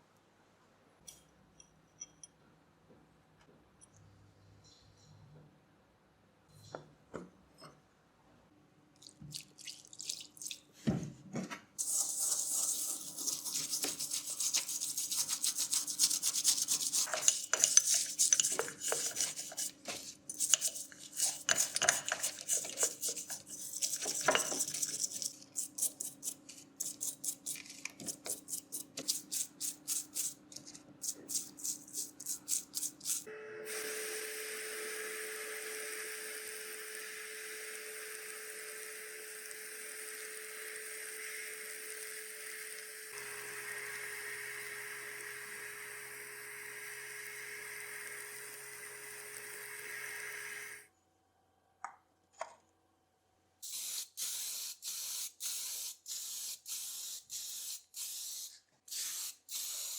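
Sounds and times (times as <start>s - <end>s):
hand scrubbing strokes: 11.8s - 33.3s.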